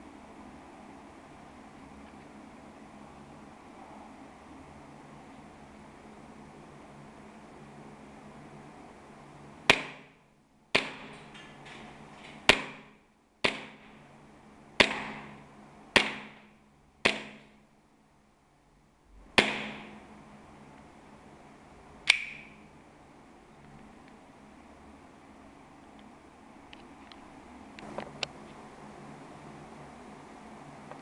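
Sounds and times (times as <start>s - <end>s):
airsoft pistol shots: 9.7s - 11.2s, 12.5s - 14.0s, 14.8s - 15.4s, 16.0s - 17.6s, 19.4s - 20.0s.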